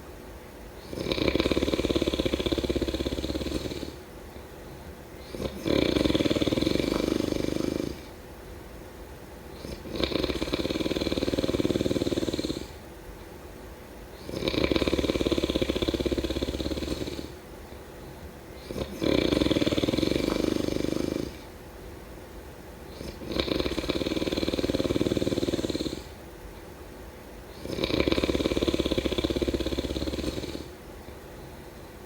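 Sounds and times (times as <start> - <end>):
person snoring: 0.8 - 4.0, 5.2 - 8.1, 9.6 - 12.8, 14.2 - 17.4, 18.6 - 21.5, 22.9 - 26.2, 27.6 - 30.8.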